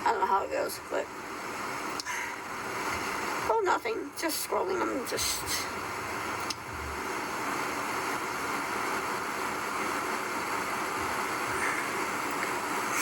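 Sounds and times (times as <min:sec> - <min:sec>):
continuous hiss: 0:00.0 - 0:13.0.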